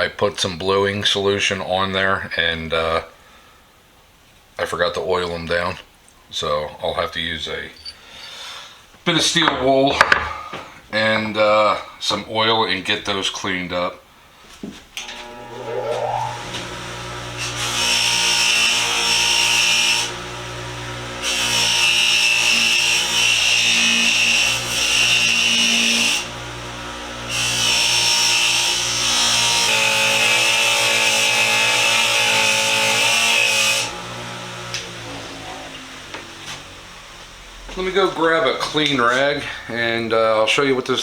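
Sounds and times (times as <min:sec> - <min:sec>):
hissy buffing of metal: 0:15.0 - 0:17.8
power tool motor running: 0:15.0 - 0:29.0.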